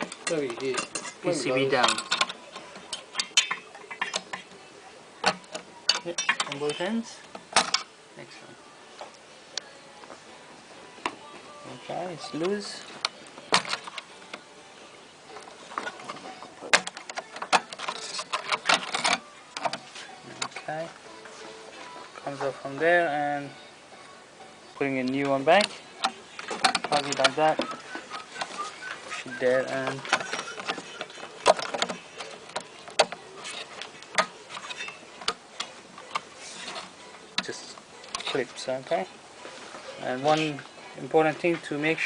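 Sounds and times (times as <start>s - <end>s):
light handling noise: 0.0s - 7.9s, 15.3s - 23.5s, 24.8s - 42.0s
plastic clips clicking: 15.4s - 20.6s, 25.1s - 38.4s.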